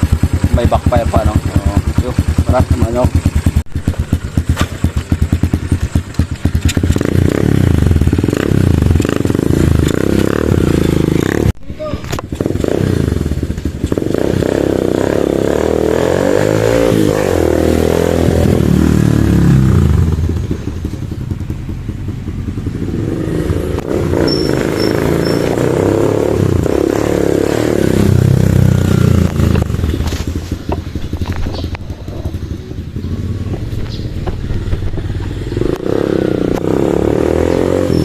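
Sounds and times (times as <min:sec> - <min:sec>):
motorcycle engine revving: 0:00.0 - 0:38.0.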